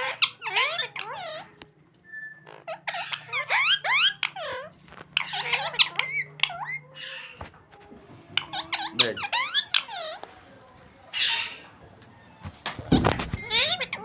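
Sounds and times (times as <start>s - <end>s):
parrot chattering: 0.0s - 1.6s, 2.4s - 7.4s, 8.1s - 11.8s, 13.4s - 14.0s.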